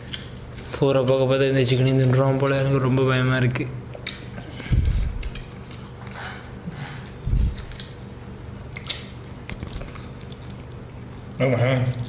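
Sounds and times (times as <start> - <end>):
person chewing food: 0.0 - 0.8, 3.9 - 12.0
steady low hum: 0.0 - 12.0.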